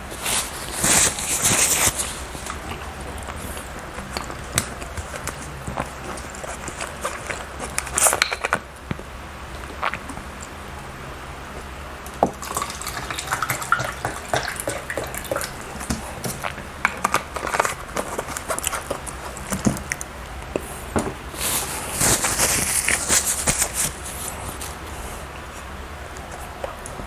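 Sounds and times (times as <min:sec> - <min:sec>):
chewing with mouth smacks: 0:00.2 - 0:08.7, 0:11.5 - 0:20.7.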